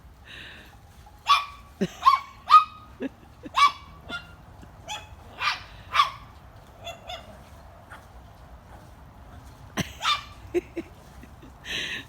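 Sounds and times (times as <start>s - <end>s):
dog yapping: 3.6s - 8.1s, 10.0s - 10.4s.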